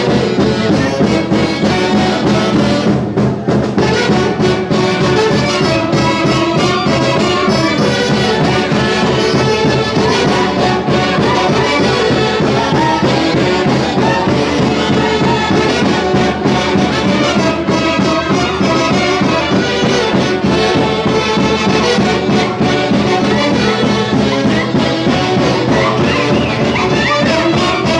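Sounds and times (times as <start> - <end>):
folk orchestra brass wind melody: 0.0 - 27.9.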